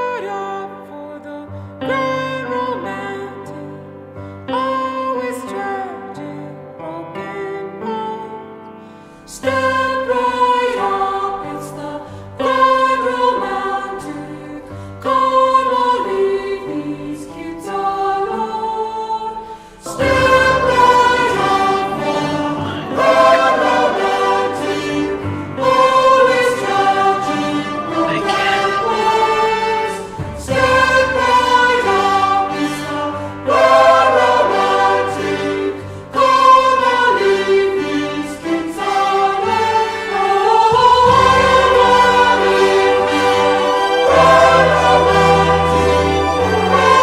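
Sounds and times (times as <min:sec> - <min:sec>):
choir-like sung harmonies: 0:00.0 - 0:47.0
instrumental accompaniment: 0:19.8 - 0:47.0.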